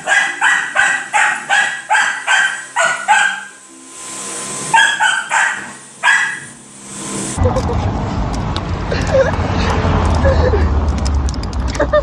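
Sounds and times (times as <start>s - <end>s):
dog barking: 0.0s - 3.5s, 4.7s - 6.5s.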